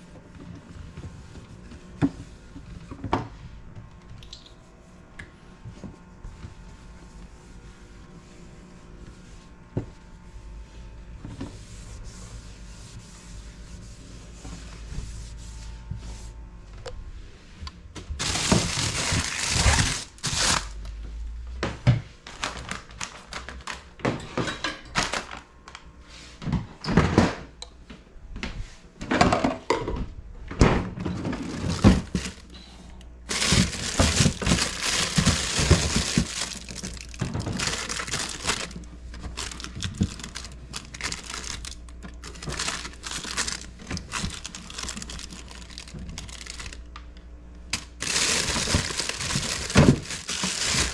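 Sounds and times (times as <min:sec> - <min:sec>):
plastic packaging crinkling: 0:18.2 - 0:21.0, 0:22.2 - 0:23.9, 0:25.0 - 0:25.8, 0:31.5 - 0:32.5, 0:33.3 - 0:46.9, 0:47.7 - 0:50.9
containers thunking down: 0:33.3 - 0:41.6.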